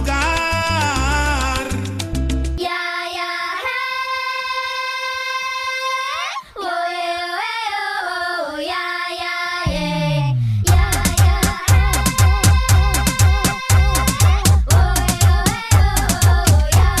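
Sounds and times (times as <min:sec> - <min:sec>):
high-pitched voice singing: 0:09.6 - 0:17.0.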